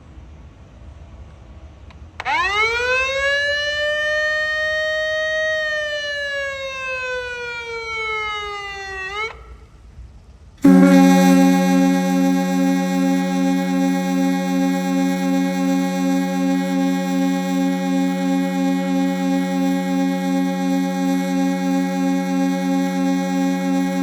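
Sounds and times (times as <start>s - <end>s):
warning siren wail: 2.2s - 9.4s, 10.6s - 24.0s
deep air horn chord: 10.6s - 24.0s.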